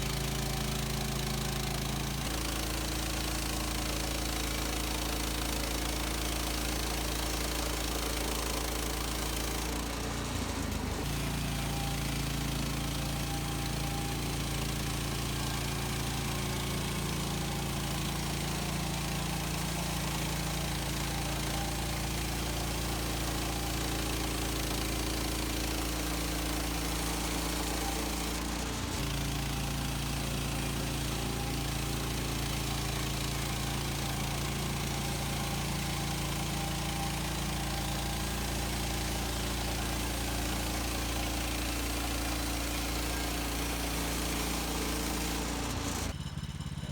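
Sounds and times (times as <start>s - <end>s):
sawmill gasoline engine running: 0.0s - 46.9s.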